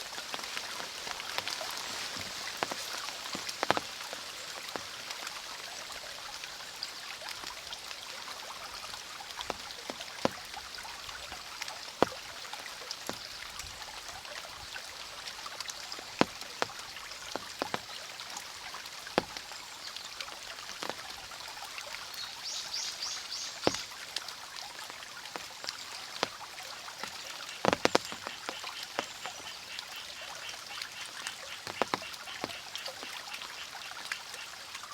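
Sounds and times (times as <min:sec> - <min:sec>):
rain hissing: 0:00.0 - 0:33.2
stream water flowing: 0:00.0 - 0:34.9
water drips: 0:00.0 - 0:34.9.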